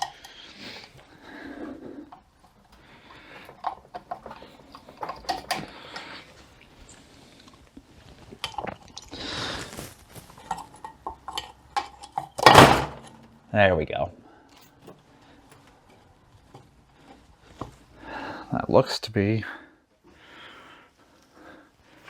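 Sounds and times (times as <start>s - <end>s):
metal parts clinking and scraping: 9.8s - 13.2s.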